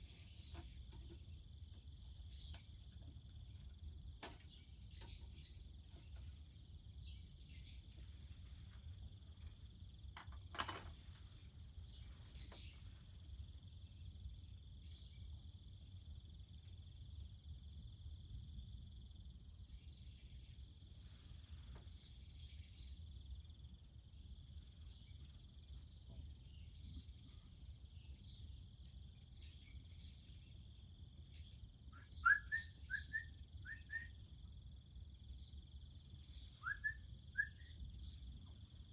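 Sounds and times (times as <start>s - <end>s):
insect chorus: 0.0s - 38.9s
bird chirping: 11.8s - 13.2s, 31.3s - 34.3s, 35.3s - 38.9s.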